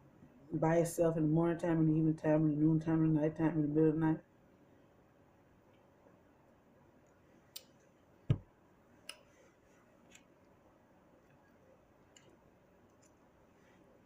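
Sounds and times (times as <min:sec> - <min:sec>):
dull thump: 0:08.3 - 0:08.5.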